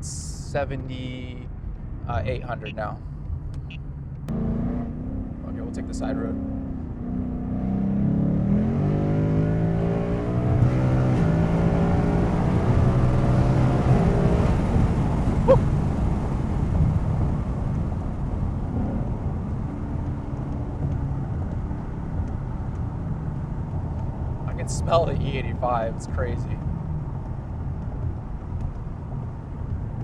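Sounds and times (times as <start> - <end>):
car engine accelerating hard: 4.3 - 29.8.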